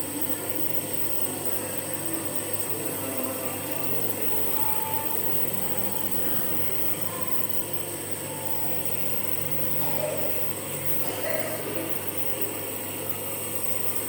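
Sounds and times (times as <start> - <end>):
nebuliser motor humming: 0.0 - 14.0.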